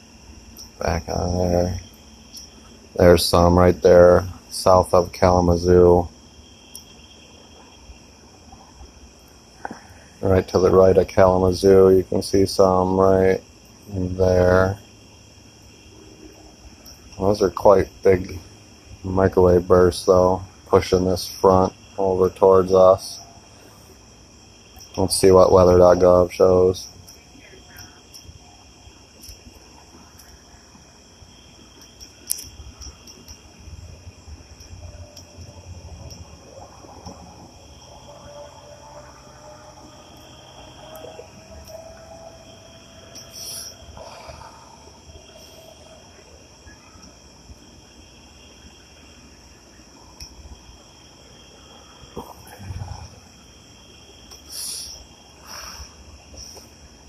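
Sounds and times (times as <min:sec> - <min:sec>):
crickets chirping: 0:00.0 - 0:57.0
sharp clicks: 0:31.8 - 0:33.5.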